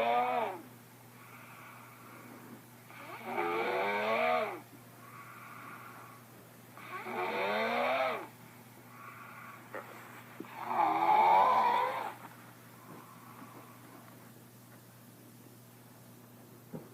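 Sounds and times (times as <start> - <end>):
person snoring loudly: 0.0 - 0.6, 2.9 - 4.6, 6.8 - 8.3, 10.5 - 12.2
soft breathing: 1.1 - 2.8, 4.9 - 6.5, 8.5 - 14.8.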